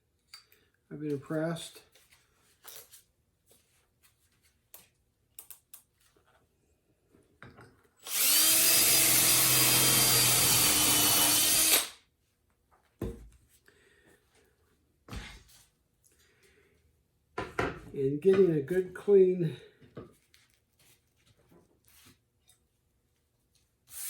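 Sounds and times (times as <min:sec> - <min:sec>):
power drill boring a hole: 0:08.0 - 0:12.0.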